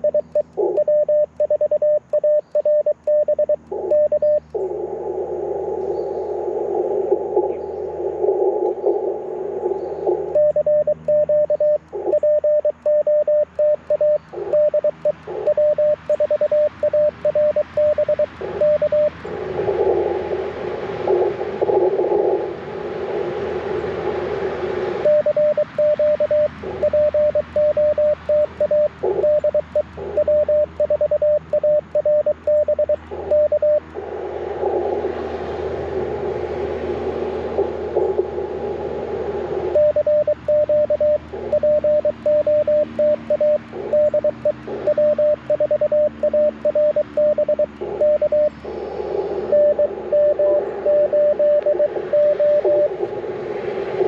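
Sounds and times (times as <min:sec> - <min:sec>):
morse code tone: 0:00.0 - 0:04.4, 0:10.3 - 0:20.1, 0:25.0 - 0:33.9, 0:39.6 - 0:48.5, 0:49.4 - 0:53.0
weaker keyed tone: 0:00.0 - 0:23.3, 0:24.8 - 0:53.2
radio band hiss: 0:00.0 - 0:54.0.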